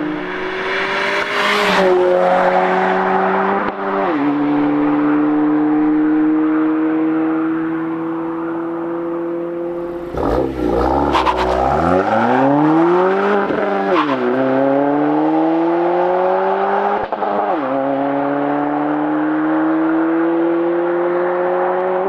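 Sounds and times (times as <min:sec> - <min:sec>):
car exhaust accelerating: 0:04.5 - 0:17.0.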